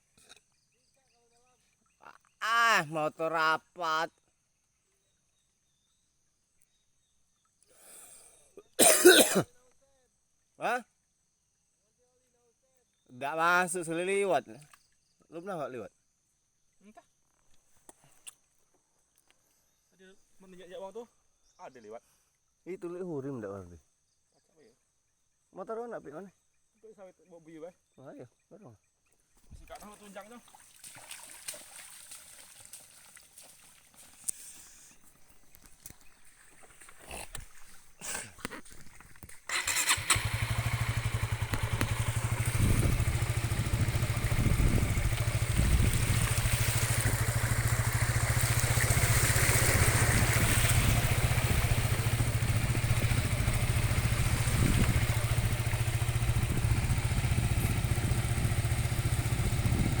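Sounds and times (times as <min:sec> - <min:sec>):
motorcycle engine running: 0:39.5 - 1:00.0.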